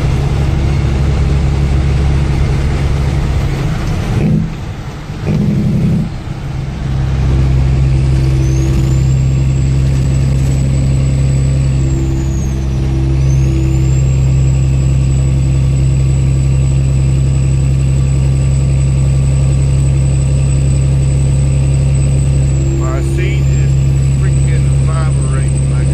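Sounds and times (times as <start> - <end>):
truck diesel engine drone: 0.0 - 25.9
thin high whine: 7.1 - 16.7, 21.4 - 25.9.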